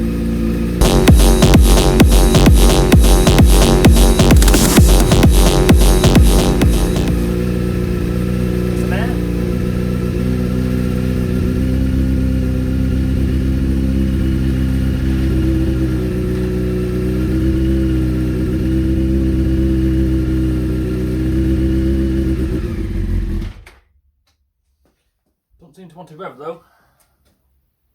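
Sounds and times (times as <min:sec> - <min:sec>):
motorcycle engine running: 0:00.0 - 0:23.7.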